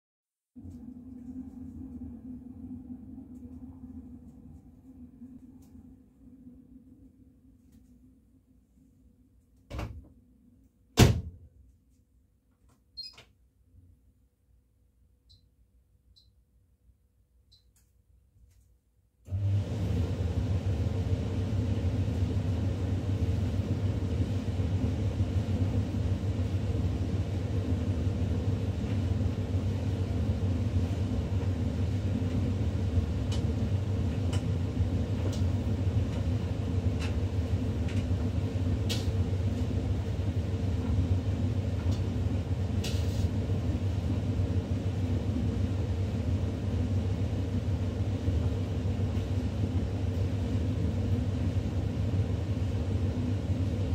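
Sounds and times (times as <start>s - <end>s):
tumble dryer humming: 19.3s - 53.9s.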